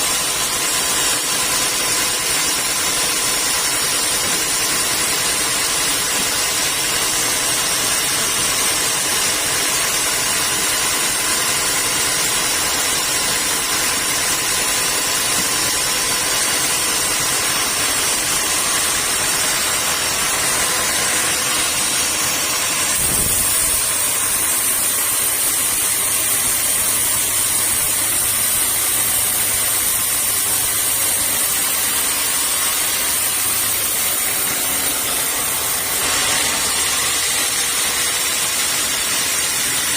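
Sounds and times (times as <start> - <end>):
sawmill machinery humming: 0.0 - 39.9.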